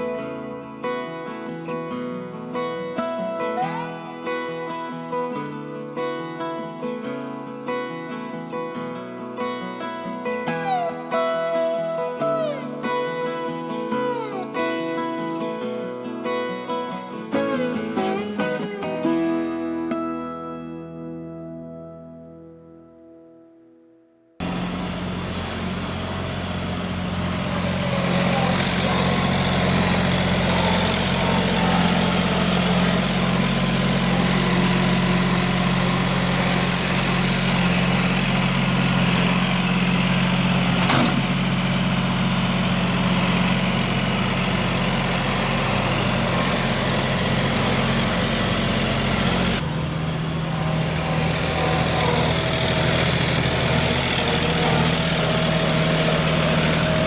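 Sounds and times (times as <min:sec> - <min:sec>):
tractor engine running: 0:24.4 - 0:57.0.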